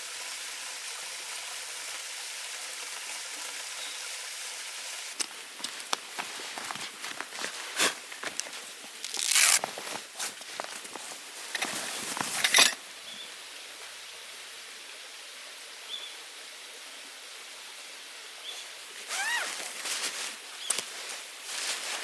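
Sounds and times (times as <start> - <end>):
steady outdoor hiss: 0.0 - 22.0
gear rustling and crinkling: 5.2 - 12.8, 19.1 - 22.0.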